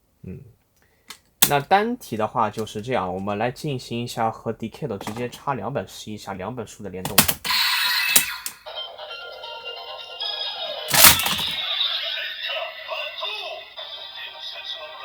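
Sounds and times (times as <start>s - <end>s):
toy clicks: 7.1s - 8.7s, 10.9s - 11.7s
sharp crack: 10.9s - 11.6s.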